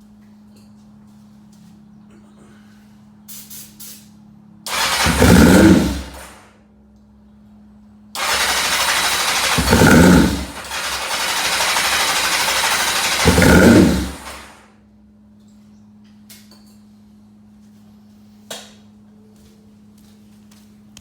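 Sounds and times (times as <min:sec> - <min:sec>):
motorcycle engine cranking: 0:04.7 - 0:06.4, 0:08.2 - 0:14.6.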